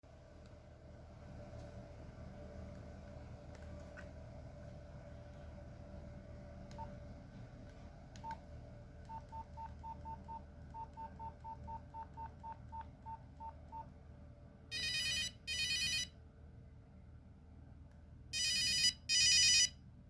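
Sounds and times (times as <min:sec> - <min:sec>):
bright phone ringtone: 0:14.7 - 0:16.1, 0:18.4 - 0:19.8
phone keypad beeps: 0:14.7 - 0:16.1, 0:18.4 - 0:19.7.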